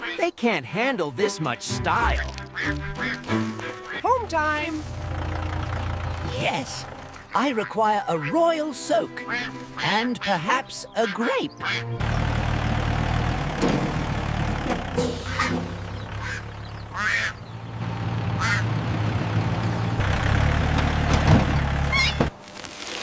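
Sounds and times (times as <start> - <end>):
ducks quacking: 0.0 - 0.4, 1.2 - 12.3, 15.2 - 17.7, 18.3 - 18.8
tractor engine drone: 1.6 - 23.0.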